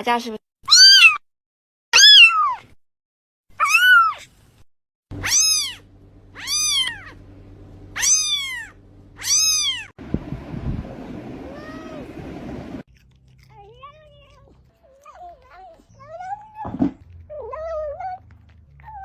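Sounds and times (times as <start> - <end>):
kittens meowing: 2.0 - 2.6, 5.2 - 5.8, 6.4 - 7.2, 8.0 - 9.9.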